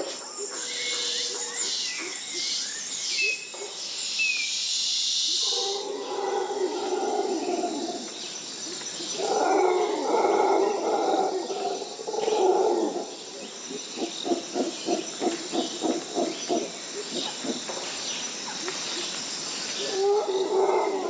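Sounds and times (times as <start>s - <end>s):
howler monkeys roaring: 5.4s - 8.2s, 9.0s - 17.7s, 19.8s - 21.0s.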